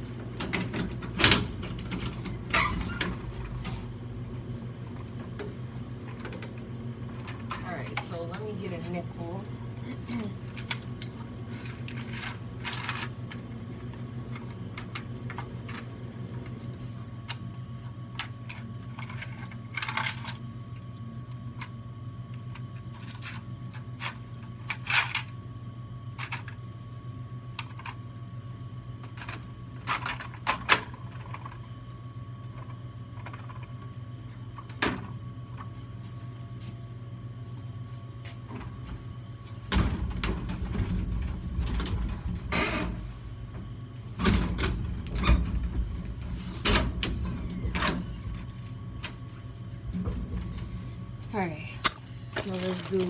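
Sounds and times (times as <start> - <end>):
steady low hum: 0.0 - 53.0
coins clinking and jingling: 51.8 - 53.0.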